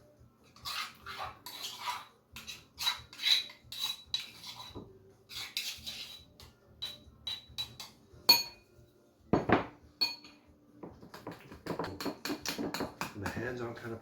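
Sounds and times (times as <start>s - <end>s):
utensil scraping a bowl: 0.4s - 8.0s.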